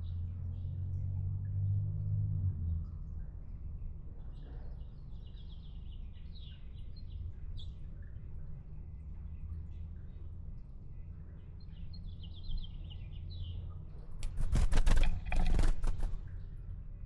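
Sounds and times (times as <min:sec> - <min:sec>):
bird splashing and fluttering wings: 0:14.1 - 0:16.5.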